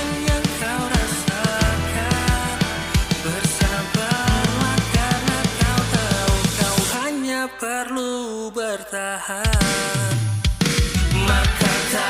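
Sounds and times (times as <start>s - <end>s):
steady drum beat: 0.0s - 7.0s, 9.5s - 12.0s
rock music: 0.0s - 7.4s, 9.4s - 12.0s.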